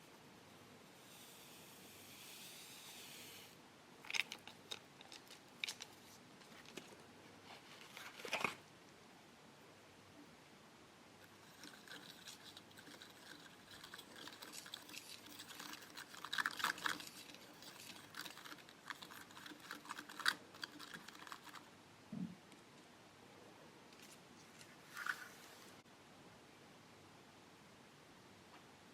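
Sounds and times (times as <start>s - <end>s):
plastic packet crinkling: 4.0s - 8.6s, 11.4s - 21.7s.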